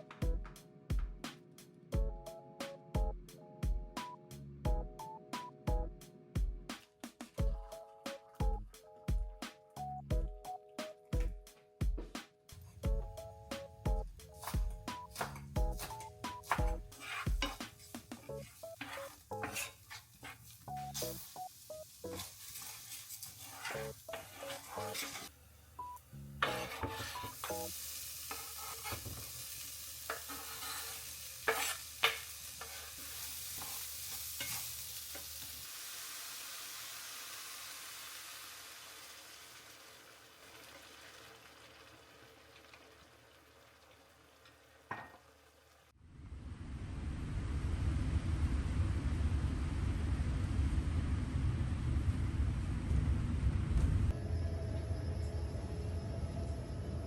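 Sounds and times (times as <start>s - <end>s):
light background music: 0.0s - 19.7s, 20.7s - 22.3s
food sizzling in a pan: 14.1s - 46.0s
pots and utensils clinking: 14.3s - 25.3s, 26.4s - 29.4s, 30.0s - 35.4s, 44.5s - 45.3s.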